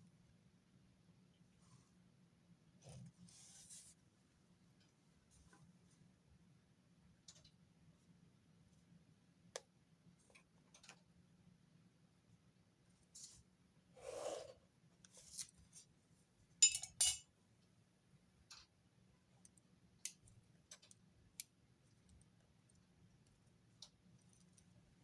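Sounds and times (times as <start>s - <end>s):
soft paper rustle: 15.1s - 16.0s.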